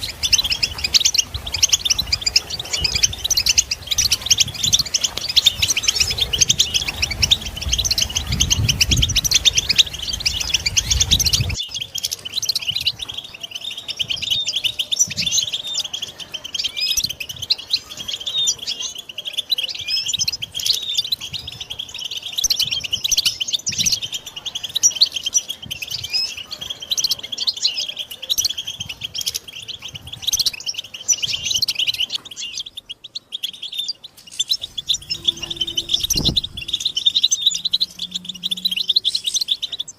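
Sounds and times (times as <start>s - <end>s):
finches twittering: 0.0s - 39.9s
low rumble: 34.6s - 39.7s.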